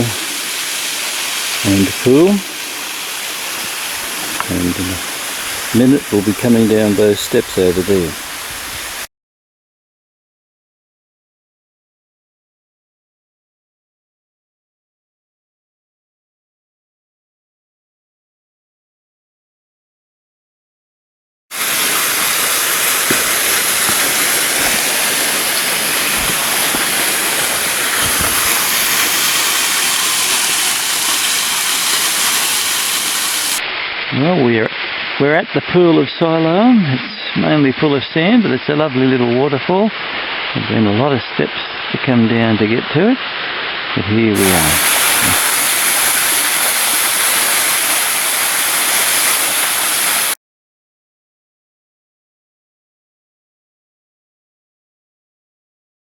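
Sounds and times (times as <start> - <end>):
waterfall splashing into pool: 0.0 - 9.1, 21.5 - 35.1, 43.2 - 50.4.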